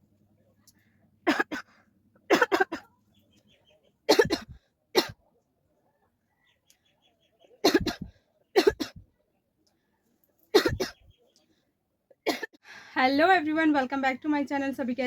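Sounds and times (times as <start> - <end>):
person coughing: 1.3 - 2.9, 4.1 - 5.2, 7.6 - 9.0, 10.6 - 11.0.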